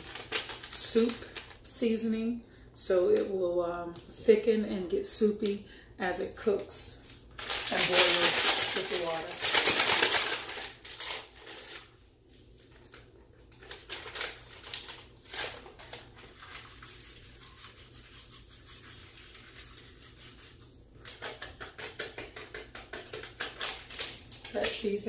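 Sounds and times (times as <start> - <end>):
paper packet crinkling: 0.0 - 1.7, 7.0 - 17.7, 21.0 - 25.0.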